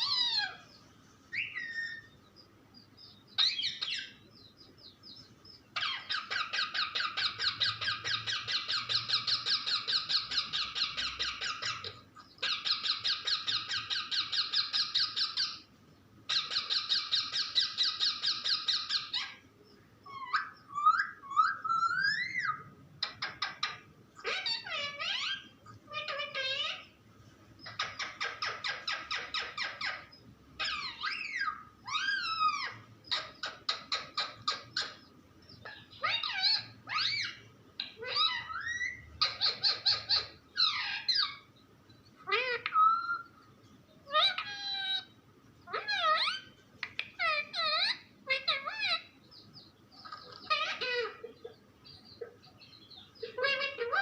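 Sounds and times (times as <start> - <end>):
parrot squeaky calls and chatter: 0.0 - 2.2, 3.1 - 4.2, 5.8 - 15.7, 16.3 - 19.4, 20.0 - 27.0, 27.6 - 41.5, 42.1 - 43.4, 44.0 - 54.0
parrot squeaking and whistling: 20.1 - 26.8, 27.7 - 35.0, 35.6 - 37.4, 38.0 - 41.5.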